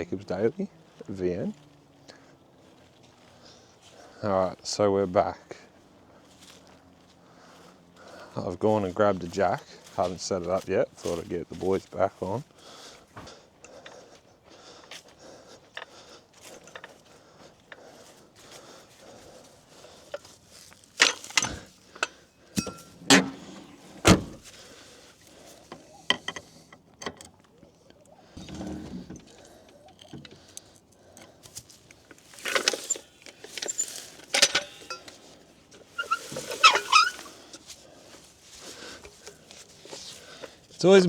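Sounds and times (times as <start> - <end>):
short squeaks: 21.0 - 24.4, 32.1 - 37.6
trolley jack metallic clanks: 21.0 - 24.4, 32.1 - 37.3.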